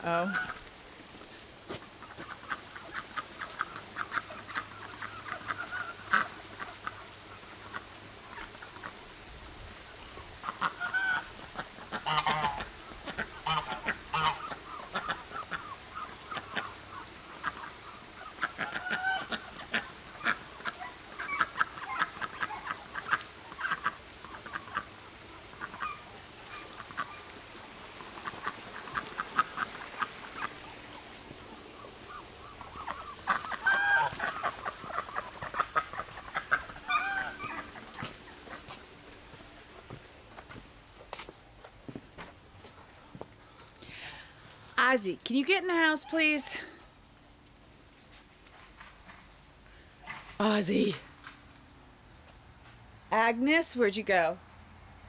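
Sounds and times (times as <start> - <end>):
ducks quacking: 0.0 - 0.7, 1.7 - 9.2, 10.0 - 40.1.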